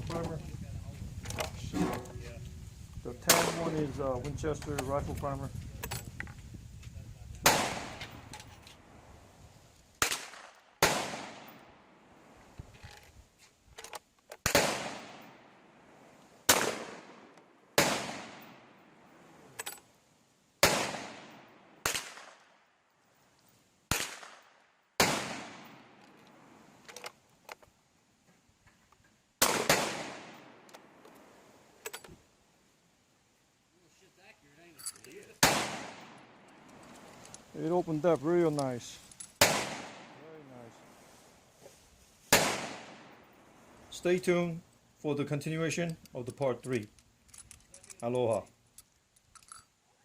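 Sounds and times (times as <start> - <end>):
gunshots echoing: 3.3 - 3.8, 7.4 - 8.3, 10.0 - 11.9, 14.4 - 15.7, 16.5 - 18.9, 20.6 - 22.5, 23.9 - 26.0, 29.4 - 31.0, 35.4 - 36.5, 39.4 - 40.2, 42.3 - 43.4.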